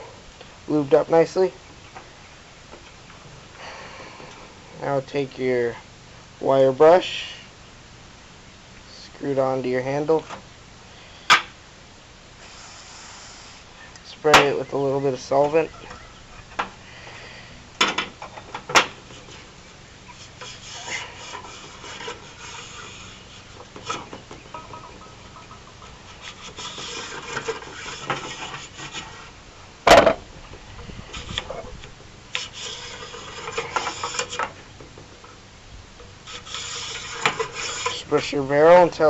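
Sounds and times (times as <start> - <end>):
bore brush scraping inside barrel: 19.0 - 29.4, 30.8 - 34.6, 36.2 - 38.9.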